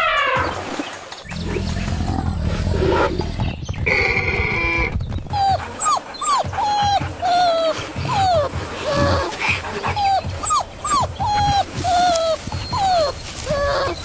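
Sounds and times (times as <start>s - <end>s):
animal growling: 1.3s - 4.9s
animal whining: 1.3s - 14.0s
dog-like whimpers: 5.3s - 14.0s.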